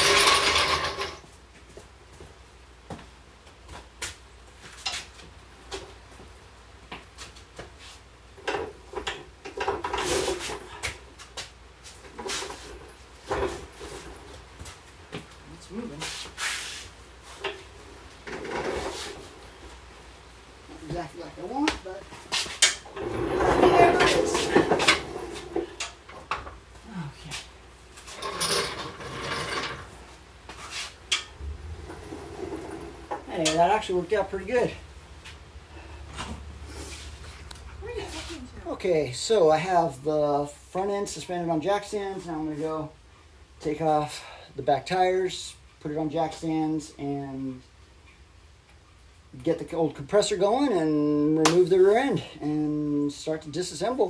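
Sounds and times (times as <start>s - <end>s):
car chassis clattering on rollers: 0.0s - 1.2s, 22.6s - 26.5s, 31.1s - 34.5s
scraping: 22.3s - 26.1s, 27.9s - 38.5s
metal knocks and clanks: 22.6s - 26.5s, 31.1s - 34.3s.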